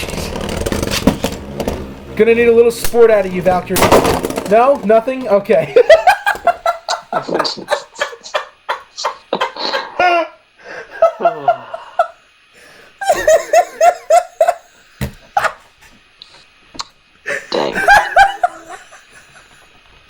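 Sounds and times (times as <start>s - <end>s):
hearty laughter: 5.6s - 12.2s, 13.0s - 16.0s, 17.3s - 19.8s.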